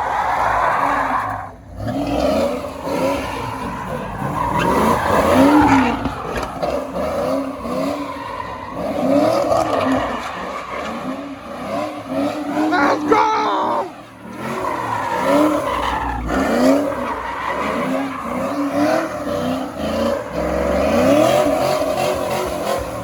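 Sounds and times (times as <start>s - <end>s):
car engine revving hard: 1.6s - 23.0s
tyres squealing: 2.6s - 22.1s.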